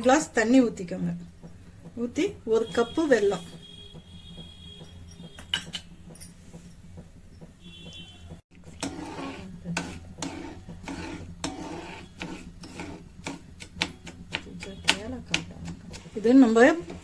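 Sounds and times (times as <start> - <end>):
utensil clicking and scraping pan: 8.6 - 17.0.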